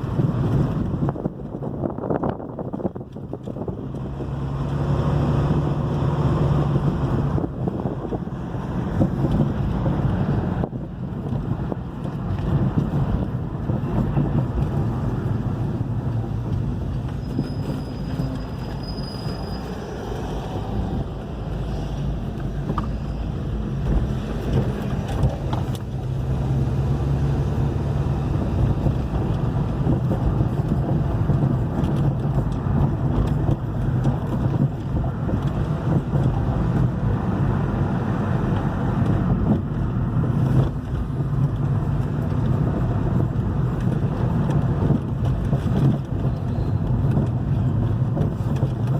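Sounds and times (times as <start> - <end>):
car road noise: 0.0 - 48.9
suspension knocking: 22.2 - 48.9.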